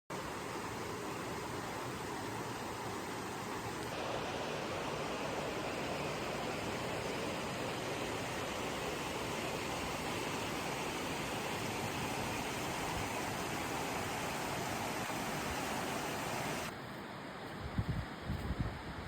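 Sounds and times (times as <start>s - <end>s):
river water rushing: 0.1s - 17.4s
wind thuds on microphone: 17.6s - 19.0s.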